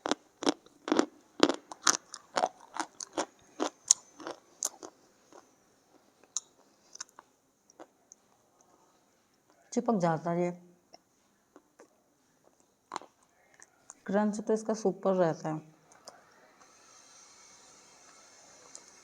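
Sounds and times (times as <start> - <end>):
chewing crunchy clay: 0.0 - 5.4.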